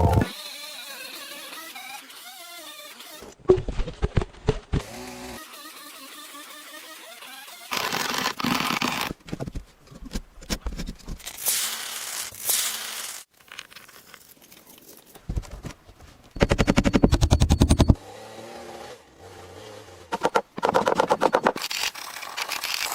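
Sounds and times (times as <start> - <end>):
handling and tool noise: 13.3 - 17.9.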